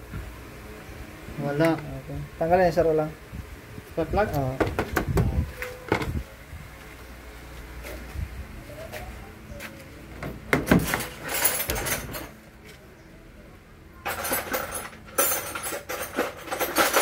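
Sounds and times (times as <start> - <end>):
hand tools clinking on metal: 10.6 - 12.4, 14.0 - 17.0.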